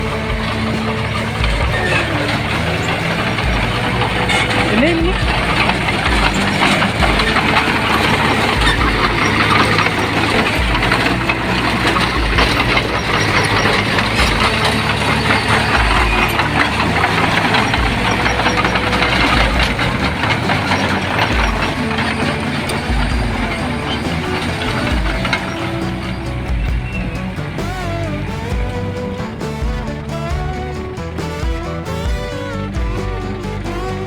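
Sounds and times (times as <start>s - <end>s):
heavy diesel machinery running: 0.0s - 34.0s.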